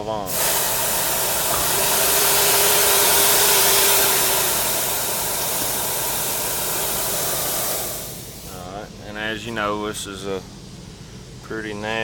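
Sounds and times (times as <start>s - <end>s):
compressed air hissing from hose: 0.0s - 8.6s.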